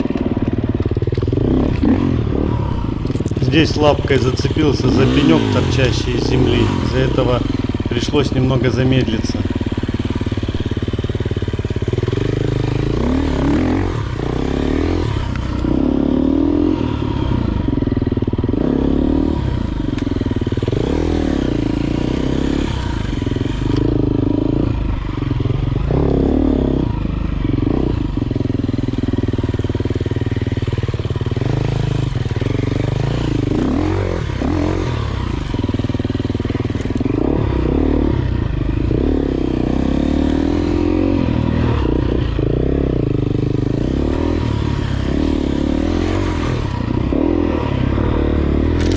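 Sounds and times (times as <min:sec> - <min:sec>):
dirt bike engine revving: 0:02.7 - 0:10.7, 0:43.6 - 0:48.9.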